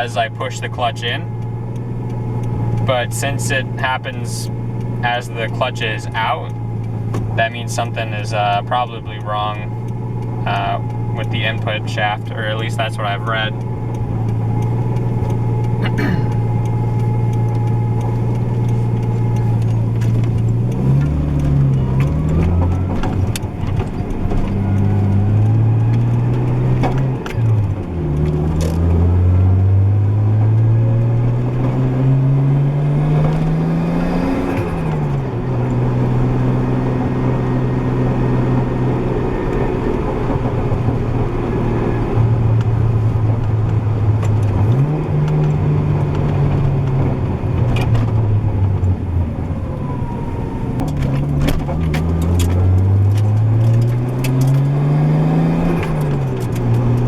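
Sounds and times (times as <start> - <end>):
car engine revving: 0.0 - 57.0.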